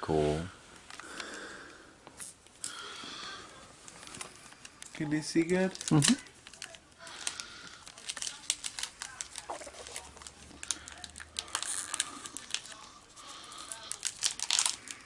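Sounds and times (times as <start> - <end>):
foil wrapper crinkling: 3.8 - 15.0.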